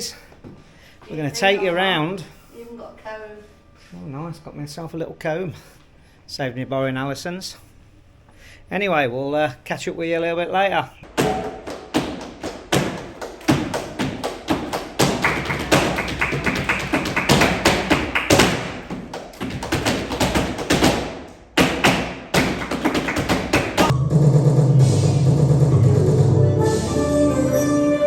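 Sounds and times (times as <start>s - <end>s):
percussive taps and claps: 11.0s - 23.9s
flamenco-like background music: 11.2s - 23.9s.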